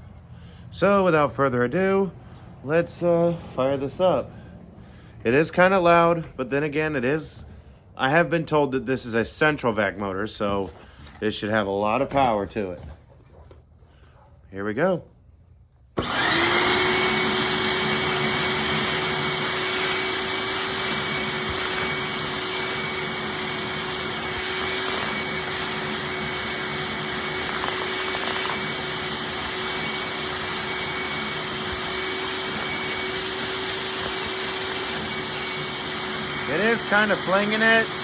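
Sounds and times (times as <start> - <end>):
shop vacuum motor whine: 16.0 - 38.0.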